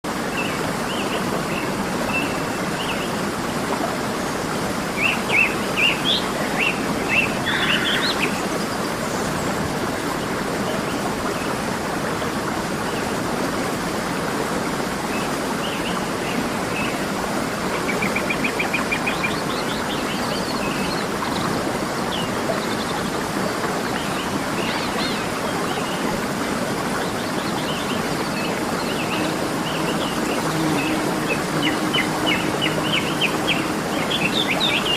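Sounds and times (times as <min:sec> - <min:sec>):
waterfall rushing: 0:00.1 - 0:34.9
birds chirping: 0:26.9 - 0:34.9.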